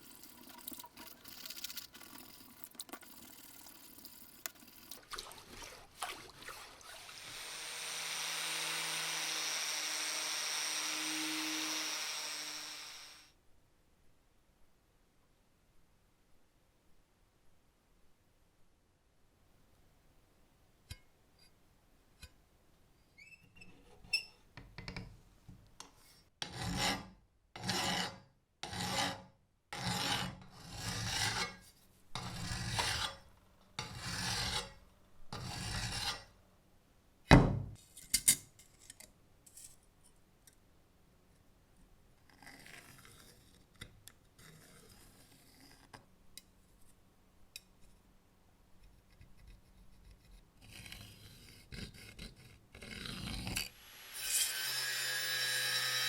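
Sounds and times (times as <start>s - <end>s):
file rasping strokes: 32.2s - 33.2s, 33.8s - 34.8s, 35.4s - 36.3s.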